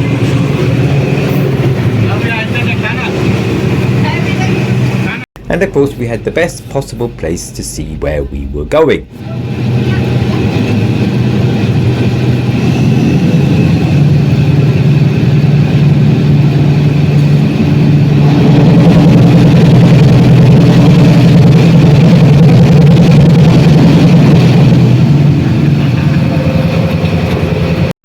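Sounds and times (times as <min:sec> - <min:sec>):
locomotive engine droning: 0:00.0 - 0:27.9.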